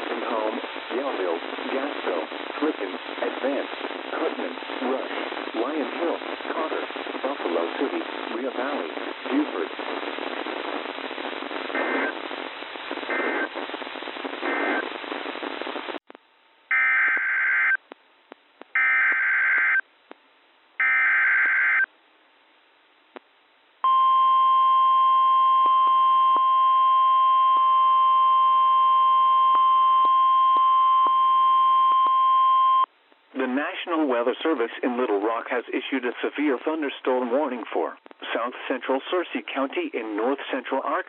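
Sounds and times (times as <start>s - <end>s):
radio static hiss: 0.0s - 20.2s, 33.2s - 41.0s.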